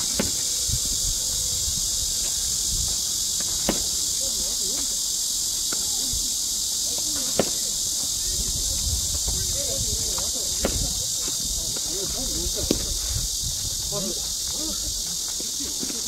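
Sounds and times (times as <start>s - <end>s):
bat cracking a ball: 0.0s - 0.4s, 3.4s - 4.0s, 7.3s - 7.6s, 10.6s - 10.9s
high-pitched insect chorus: 0.0s - 16.0s
faint voices: 3.8s - 16.0s.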